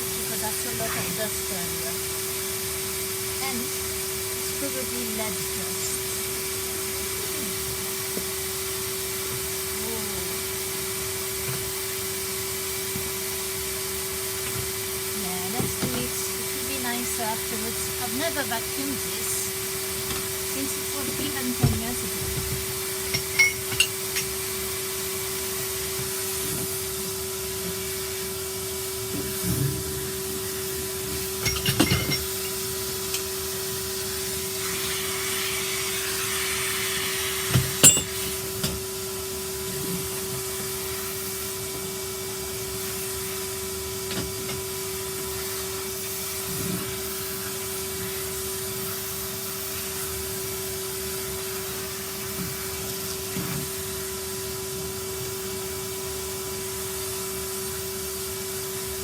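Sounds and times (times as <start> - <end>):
vacuum cleaner running: 0.0 - 59.0.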